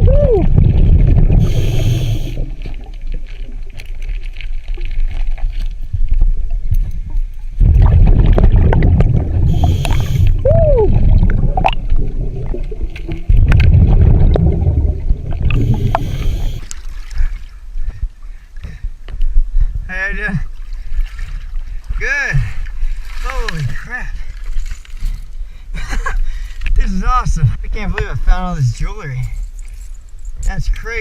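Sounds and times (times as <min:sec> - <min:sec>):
rumbling bubble bursts underwater: 0:00.0 - 0:17.4
regulator inhale hiss: 0:01.4 - 0:02.5, 0:09.5 - 0:10.4, 0:15.6 - 0:16.7.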